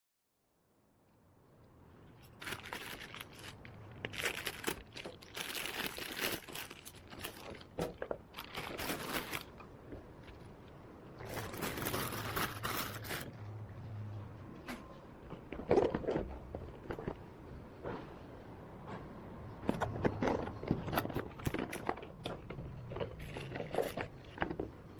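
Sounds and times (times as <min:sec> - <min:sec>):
packaging crinkling and rustling: 0:02.2 - 0:10.5, 0:11.2 - 0:13.4.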